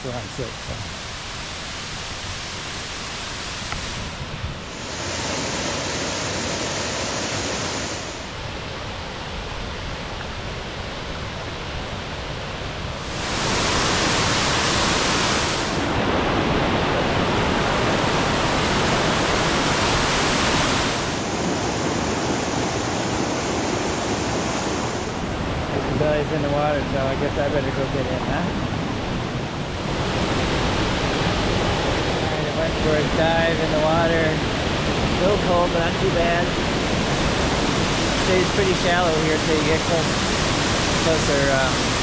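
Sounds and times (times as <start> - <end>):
waterfall rushing: 4.5 - 8.5, 13.0 - 16.3, 19.1 - 25.5.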